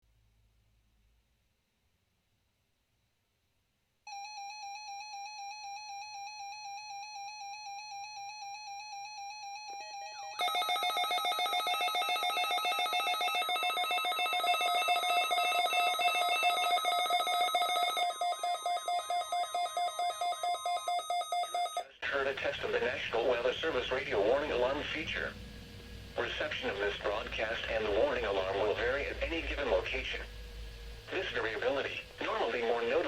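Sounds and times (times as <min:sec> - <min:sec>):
weather radio alarms beeping: 0:10.0 - 0:21.9, 0:22.7 - 0:33.0.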